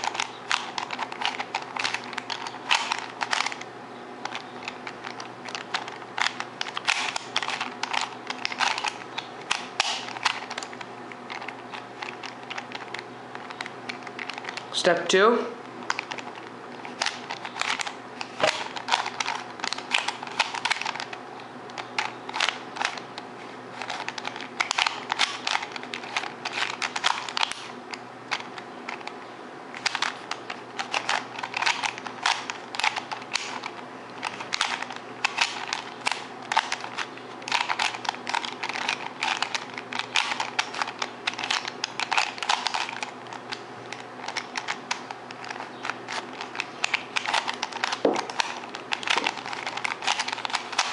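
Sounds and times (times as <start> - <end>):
plastic cube clicking as turned: 0.0 - 3.6, 4.2 - 14.6, 18.5 - 21.1, 23.8 - 27.7, 29.8 - 33.7, 34.3 - 43.1, 43.9 - 50.9.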